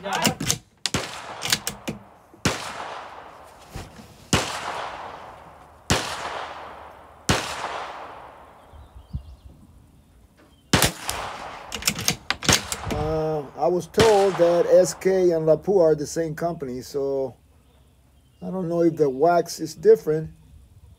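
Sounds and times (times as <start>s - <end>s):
rifle shots echoing: 0.0s - 3.6s, 4.3s - 8.8s, 10.7s - 16.1s.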